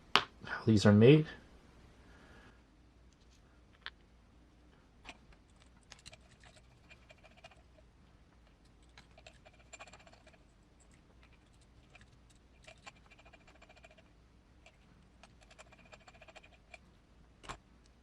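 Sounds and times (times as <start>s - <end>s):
small metal parts ticking: 5.5s - 7.8s, 8.6s - 16.8s.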